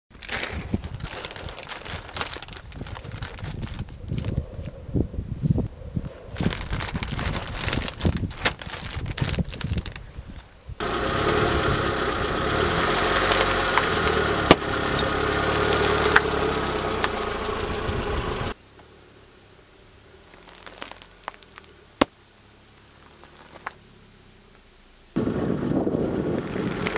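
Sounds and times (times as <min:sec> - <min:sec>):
crackling and rustling clicks: 0:00.1 - 0:04.8, 0:06.4 - 0:10.6, 0:17.0 - 0:17.7, 0:20.3 - 0:22.1, 0:23.0 - 0:23.8
car engine idling: 0:10.8 - 0:20.3.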